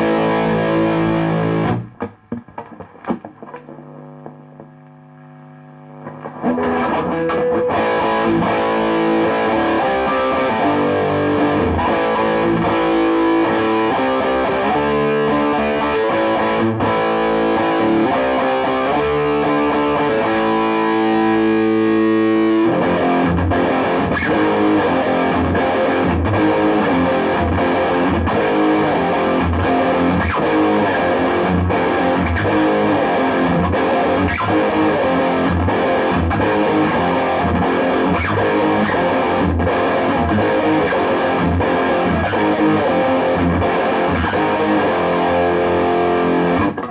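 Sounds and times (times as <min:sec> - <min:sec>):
chugging guitar riffs: 0:00.0 - 0:04.9, 0:06.0 - 0:46.9
heavily distorted electric guitar: 0:00.0 - 0:46.9.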